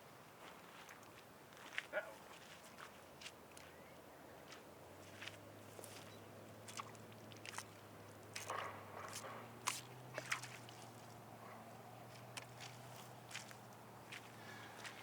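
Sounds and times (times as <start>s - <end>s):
footsteps on wet grass: 4.5s - 11.2s, 12.0s - 15.0s.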